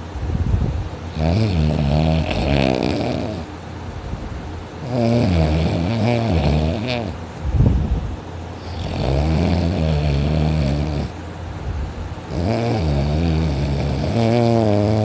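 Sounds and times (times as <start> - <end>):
person snoring heavily: 1.1 - 3.5, 4.8 - 7.2, 8.6 - 11.2, 12.3 - 15.0.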